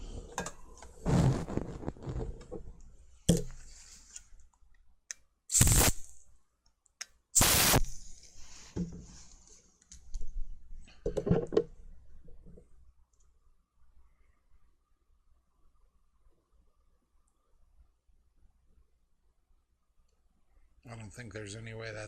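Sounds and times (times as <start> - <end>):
short harsh noises: 5.5 - 6.2, 7.4 - 8.1.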